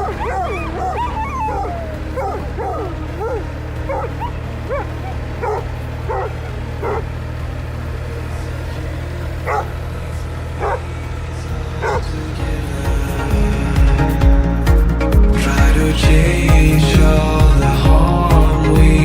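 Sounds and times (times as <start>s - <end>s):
dog yipping: 0.0s - 7.0s, 9.5s - 9.7s, 11.8s - 12.0s
steady low hum: 0.0s - 19.0s.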